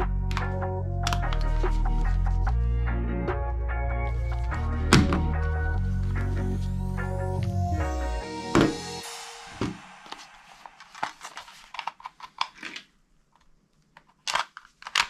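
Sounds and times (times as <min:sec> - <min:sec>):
music: 0:00.0 - 0:11.1.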